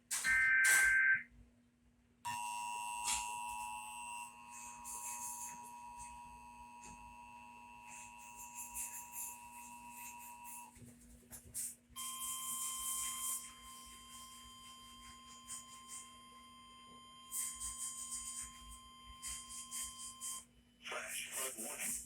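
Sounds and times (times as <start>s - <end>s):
electronic chime tone: 0.2s - 1.2s, 12.0s - 20.4s.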